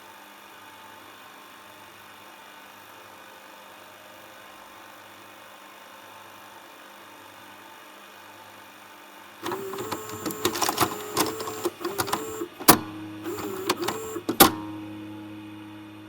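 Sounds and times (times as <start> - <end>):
motor hum: 9.4 - 14.6
rapid mechanical clicks: 9.4 - 14.6
small motor whirring: 9.4 - 14.6.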